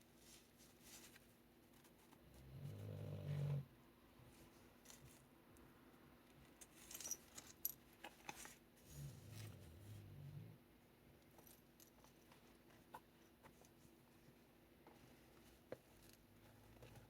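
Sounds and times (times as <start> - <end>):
dog snoring: 2.4 - 3.7.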